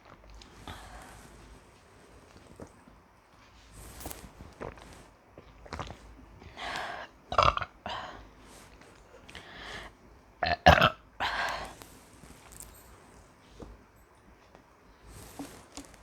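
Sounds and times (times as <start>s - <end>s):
quiet hissy sounds: 0.0s - 16.0s
woman burping loudly: 7.3s - 7.9s, 10.4s - 11.0s.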